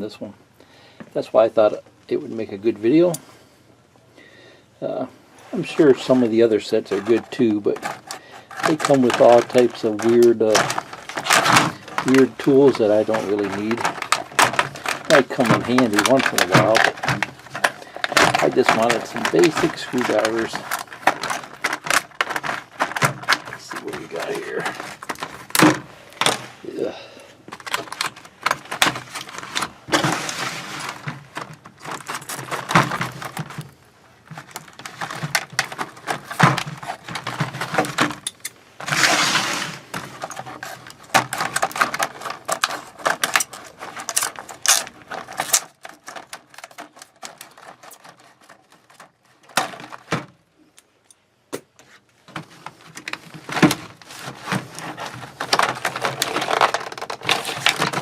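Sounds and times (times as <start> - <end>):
plastic packaging crackling: 5.5 - 51.0, 52.1 - 58.0.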